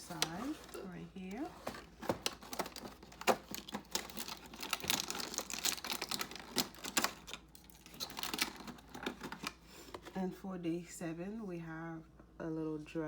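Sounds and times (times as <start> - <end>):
clicks taps and crinkles: 0.0 - 10.2.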